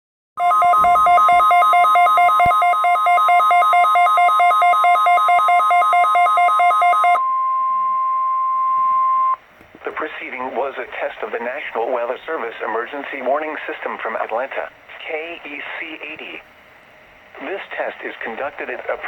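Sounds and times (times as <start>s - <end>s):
buzzy electronic alarm beeping: 0.4s - 8.1s
steady alarm tone: 0.4s - 9.4s.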